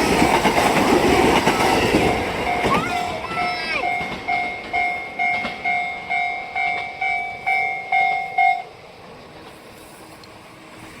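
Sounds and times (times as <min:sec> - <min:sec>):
level-crossing alarm bell: 0:01.7 - 0:08.8.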